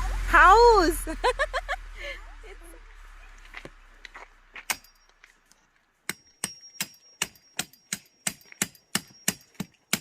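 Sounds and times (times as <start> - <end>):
hammer striking metal tent stake: 4.6 - 5.2, 6.1 - 10.0.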